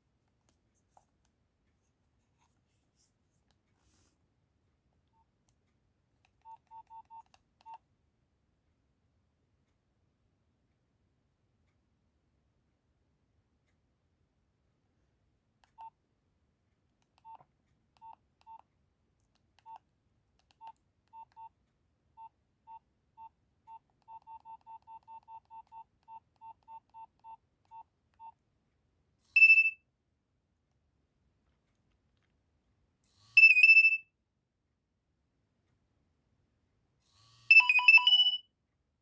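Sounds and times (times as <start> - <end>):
phone keypad beeps: 6.4 - 7.8, 20.6 - 21.5, 22.2 - 28.4, 29.3 - 29.8, 33.4 - 34.0, 37.5 - 38.4.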